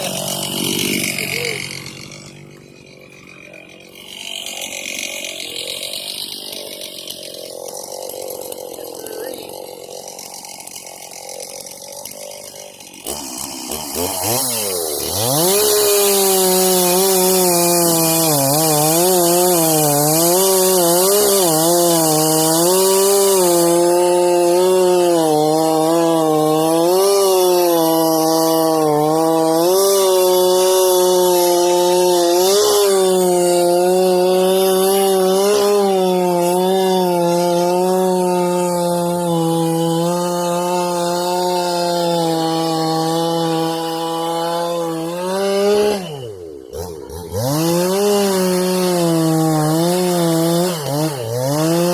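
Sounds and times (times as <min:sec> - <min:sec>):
chainsaw revving: 0:00.0 - 0:51.9.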